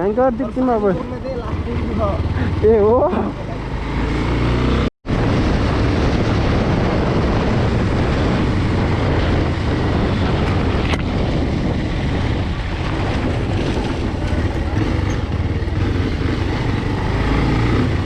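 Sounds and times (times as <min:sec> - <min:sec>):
motorcycle engine running: 0:00.0 - 0:18.0
wind rush on microphone: 0:00.3 - 0:18.0.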